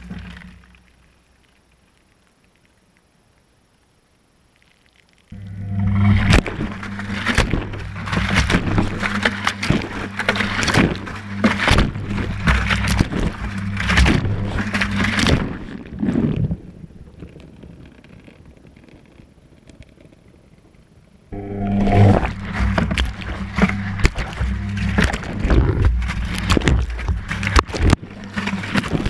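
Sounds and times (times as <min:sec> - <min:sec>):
washing machine motor hum: 0:05.4 - 0:15.6, 0:21.4 - 0:29.0
laundry sloshing in water: 0:06.0 - 0:16.5, 0:22.1 - 0:29.0.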